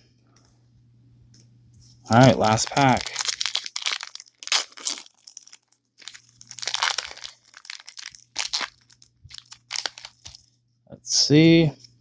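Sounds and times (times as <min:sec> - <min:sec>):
plastic wrapper tearing and crinkling: 0:02.1 - 0:10.4.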